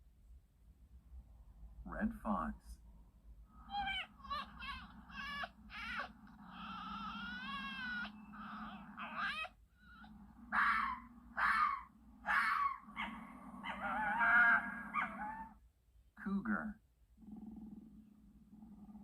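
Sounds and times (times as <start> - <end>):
fox yelping and whining: 3.5 - 15.6
fox screaming: 3.6 - 15.6.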